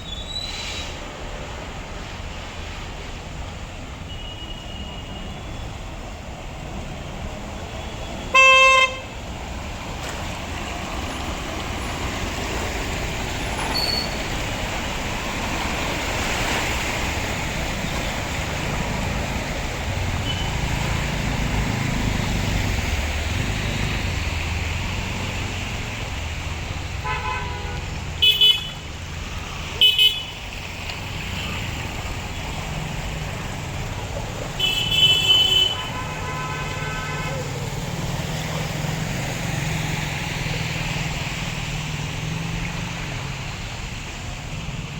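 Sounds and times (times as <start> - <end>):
road traffic: 0.0 - 44.9
vehicle horns honking: 7.8 - 9.2, 20.1 - 20.7, 27.0 - 28.8, 29.8 - 30.4, 34.6 - 37.5.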